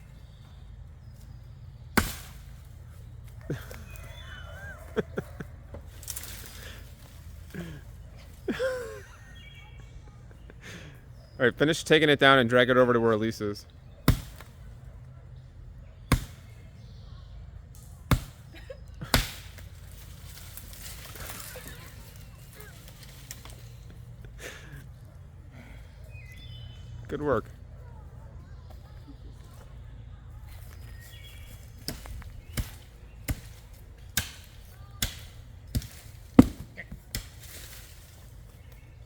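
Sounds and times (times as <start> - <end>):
blade chopping into tree trunk: 2.0 - 2.6, 14.1 - 14.6, 16.1 - 16.5, 18.1 - 19.7, 34.2 - 37.7.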